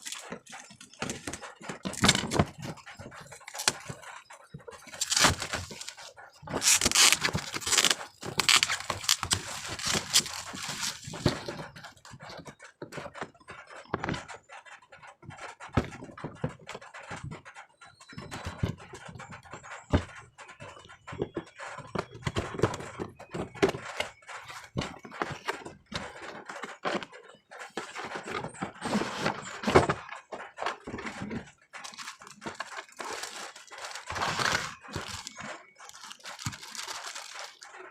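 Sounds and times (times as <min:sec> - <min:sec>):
cardboard packaging handling: 0:00.0 - 0:11.9, 0:27.8 - 0:37.9.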